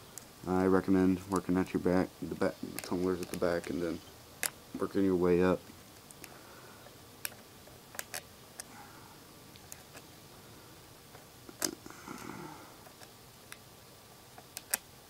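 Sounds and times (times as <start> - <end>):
paper clip clicking in lock: 7.2 - 8.2.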